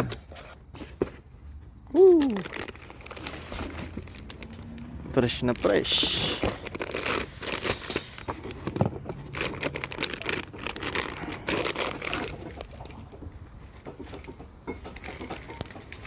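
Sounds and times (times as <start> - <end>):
packaging crinkling and rustling: 1.9 - 13.3.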